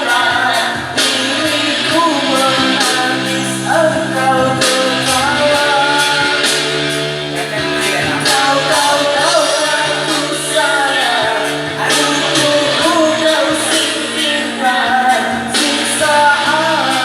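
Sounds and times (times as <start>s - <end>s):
person singing: 7.3s - 17.0s.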